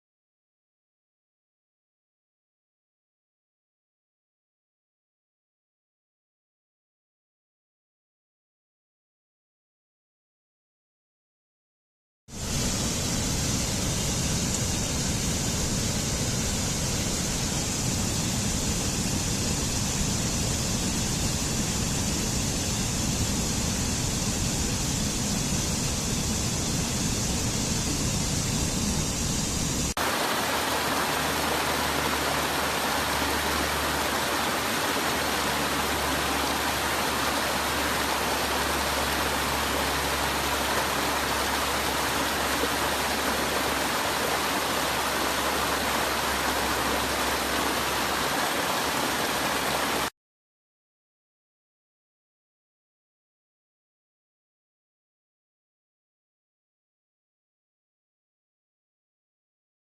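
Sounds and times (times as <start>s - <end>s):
waterfall rushing: 26.7s - 50.1s.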